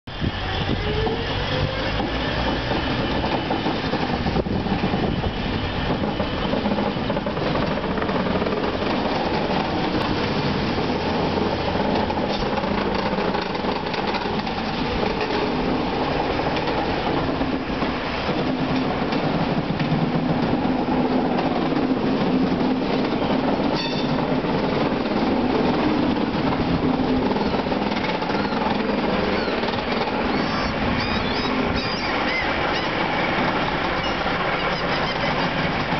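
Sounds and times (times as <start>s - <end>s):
train wheels squeaking on rails: 0.3s - 18.6s, 22.8s - 24.4s, 27.1s - 35.9s
high wavering squeals: 28.3s - 33.1s, 34.0s - 35.7s.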